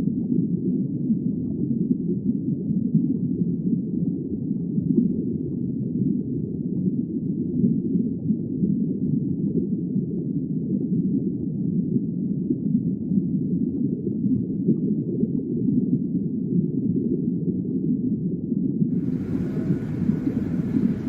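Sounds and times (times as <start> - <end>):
muffled underwater rumble: 19.0 - 21.0.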